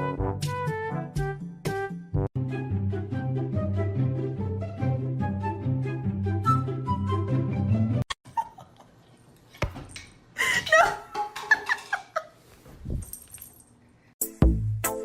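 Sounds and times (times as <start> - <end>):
background music: 0.0 - 8.1, 14.2 - 15.0.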